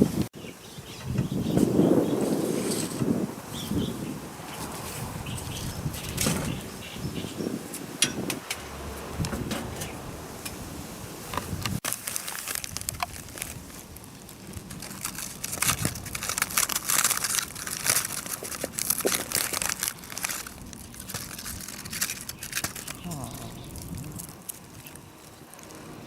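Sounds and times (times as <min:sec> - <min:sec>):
crinkling handling noise: 0:11.4 - 0:26.0.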